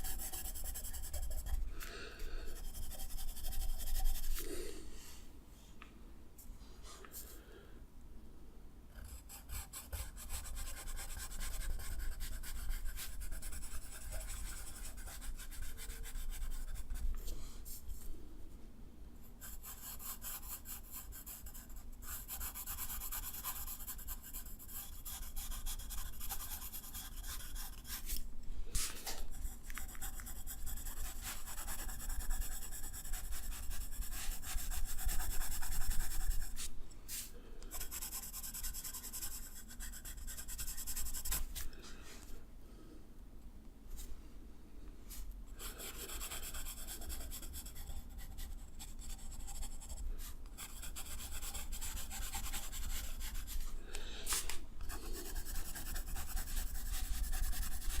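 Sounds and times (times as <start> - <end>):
drawing tool scratching paper: 0.0 - 1.6, 2.6 - 4.4, 9.0 - 16.9, 19.4 - 28.2, 29.3 - 36.6, 45.6 - 53.6, 54.9 - 58.0.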